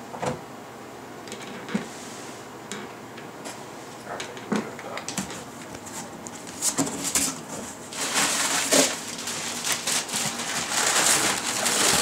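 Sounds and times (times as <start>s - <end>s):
packaging rustling and crinkling: 6.6s - 12.0s.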